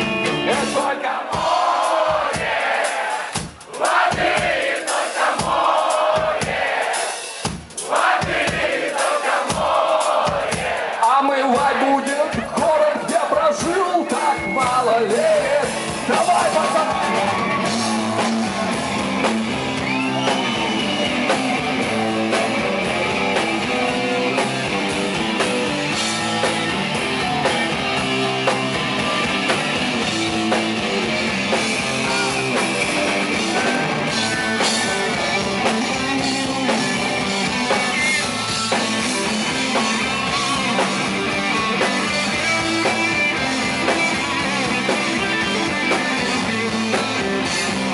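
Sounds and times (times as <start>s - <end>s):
electric guitar: 0.0s - 1.0s, 14.4s - 47.9s
bass and drums: 0.0s - 47.9s.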